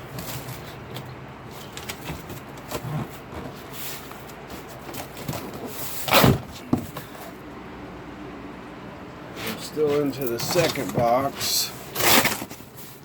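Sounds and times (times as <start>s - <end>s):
cardboard box rustles and knocks: 2.0s - 7.1s
cardboard tearing rasp: 4.7s - 6.8s, 11.8s - 13.0s.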